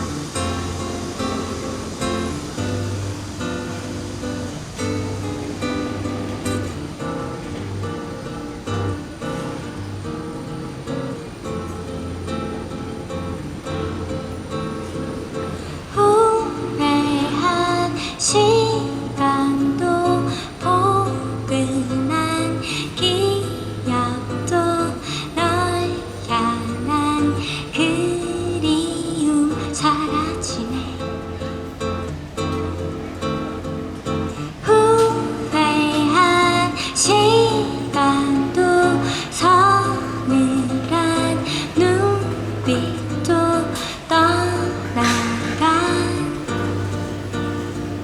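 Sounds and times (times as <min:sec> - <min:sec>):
acoustic guitar: 0:00.0 - 0:48.0
woman singing: 0:11.0 - 0:31.8, 0:34.3 - 0:48.0.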